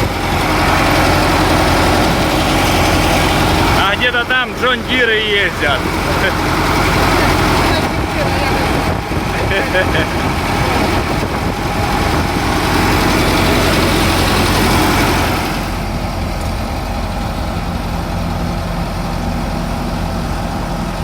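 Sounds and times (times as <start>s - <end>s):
combine harvester engine running: 0.0s - 21.0s.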